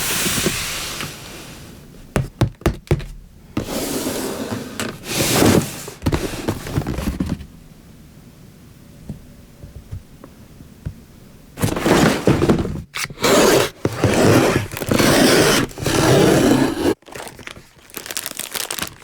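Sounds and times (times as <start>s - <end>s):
plastic parts rustling and rattling: 4.5s - 7.5s, 11.6s - 16.1s, 16.7s - 19.0s.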